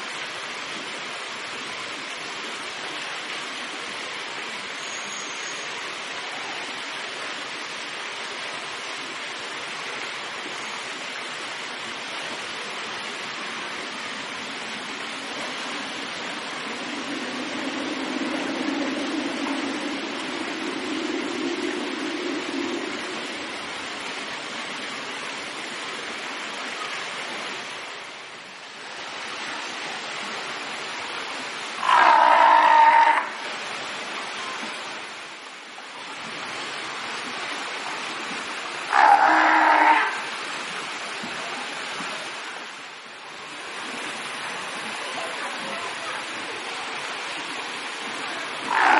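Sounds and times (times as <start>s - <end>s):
water rushing and splashing: 0.0s - 48.9s
fur seal call: 31.8s - 33.3s, 38.9s - 40.2s, 48.7s - 48.9s.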